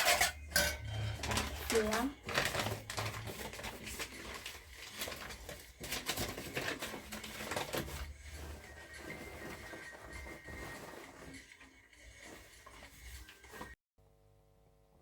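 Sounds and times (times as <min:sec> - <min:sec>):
utensil scraping in mixing bowl: 0:06.2 - 0:13.8.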